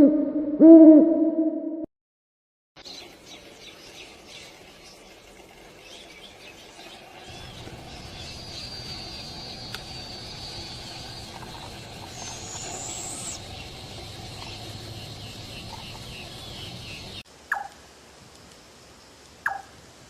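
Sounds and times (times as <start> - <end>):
outdoor background noise: 2.8 - 20.0
high bird whistle: 8.2 - 13.5.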